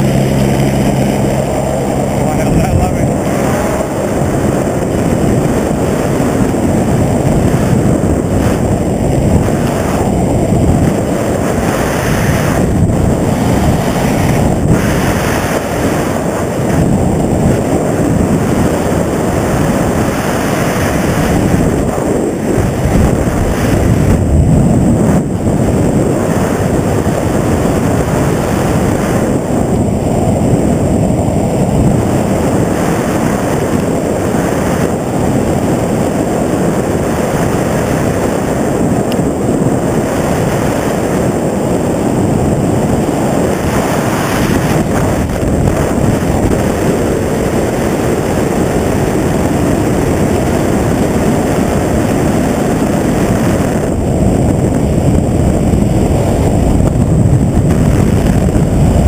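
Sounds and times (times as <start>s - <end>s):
helicopter running: 0.0s - 59.0s
wind buffeting microphone: 0.0s - 59.0s.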